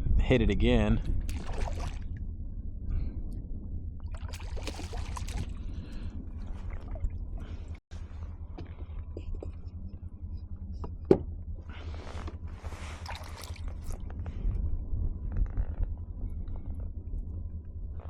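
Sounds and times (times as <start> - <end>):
wind rumble on microphone: 0.0 - 18.0
fish splashing: 1.3 - 2.0, 4.1 - 5.5, 13.0 - 14.0.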